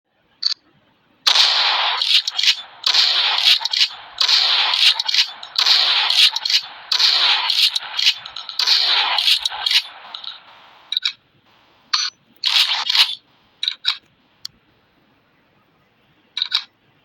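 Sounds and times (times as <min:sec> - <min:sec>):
shotgun firing: 0:01.3 - 0:10.9, 0:12.4 - 0:13.2
sharp metallic clacks: 0:01.3 - 0:11.2.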